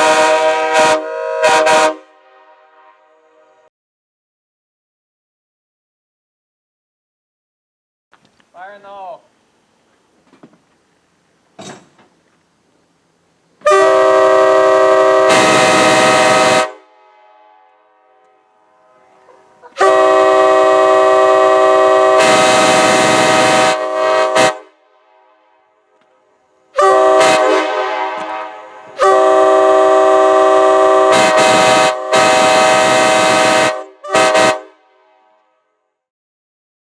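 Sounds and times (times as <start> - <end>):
locomotive air horn chord: 0.0 - 3.7, 13.6 - 36.0
faint chord: 16.9 - 19.9.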